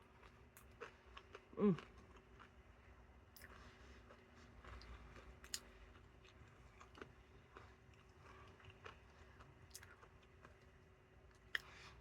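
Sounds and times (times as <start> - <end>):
faint chewing: 3.3 - 12.0.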